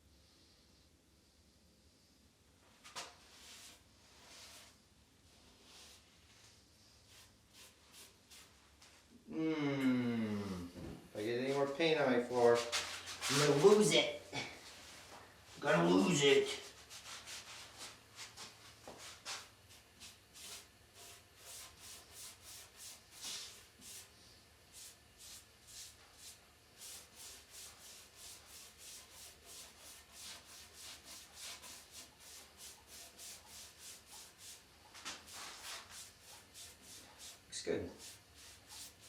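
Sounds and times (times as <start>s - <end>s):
paintbrush strokes on wood: 2.8s - 9.1s, 11.4s - 39.0s.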